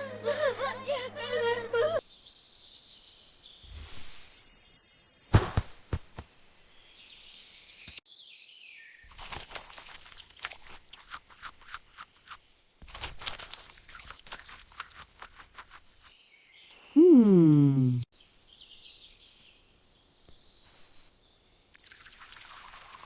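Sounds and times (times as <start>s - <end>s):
crunching and scraping in soil: 9.1s - 16.1s, 20.4s - 21.2s.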